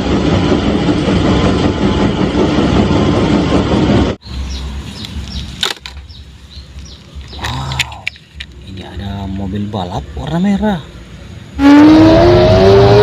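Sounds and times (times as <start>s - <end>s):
birds chirping: 4.2s - 11.3s.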